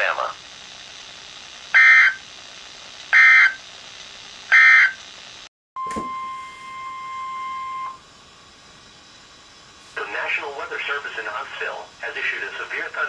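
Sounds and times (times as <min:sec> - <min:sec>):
digital data tone bursts: 0:01.7 - 0:02.2, 0:03.1 - 0:03.6, 0:04.5 - 0:05.0
steady warning alarm tone: 0:01.7 - 0:02.2, 0:03.1 - 0:03.6, 0:04.5 - 0:05.0, 0:05.8 - 0:12.7.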